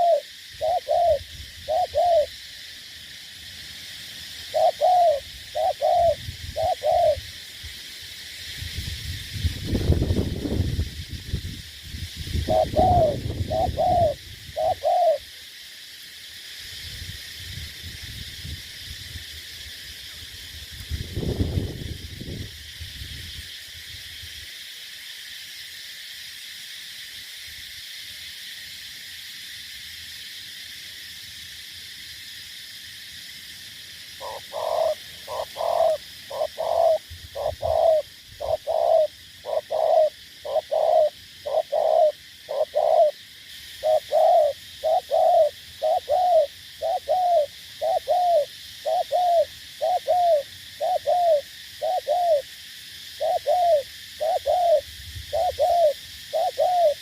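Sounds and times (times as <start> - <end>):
dove cooing: 0.0 - 2.3, 4.4 - 7.2, 12.5 - 15.2, 34.2 - 43.2, 43.8 - 52.4, 53.2 - 57.0
steady high hiss: 0.0 - 57.0.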